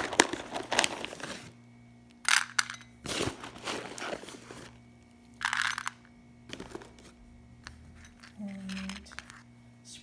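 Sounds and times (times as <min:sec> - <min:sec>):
faint steady hum: 0:00.0 - 0:10.0
dry pellets rattling in a bowl: 0:05.4 - 0:06.8.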